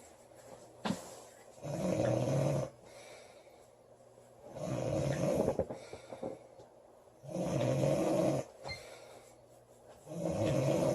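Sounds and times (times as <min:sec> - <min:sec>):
quiet breathing: 0:00.0 - 0:10.9
girl snoring: 0:10.2 - 0:10.9.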